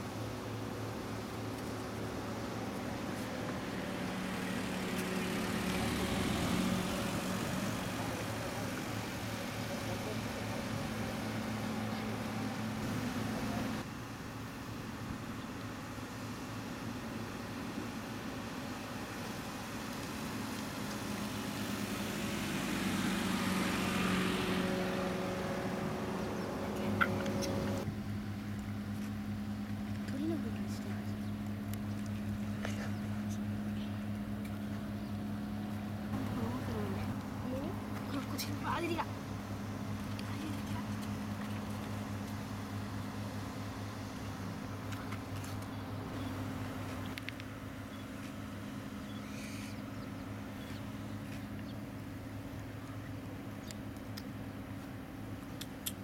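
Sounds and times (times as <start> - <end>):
vehicle engine idling: 0.0 - 56.0
broad rushing noise: 20.2 - 27.9.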